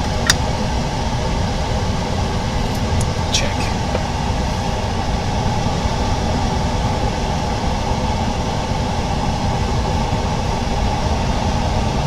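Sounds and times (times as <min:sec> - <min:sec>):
machine humming and hissing: 0:00.0 - 0:12.0.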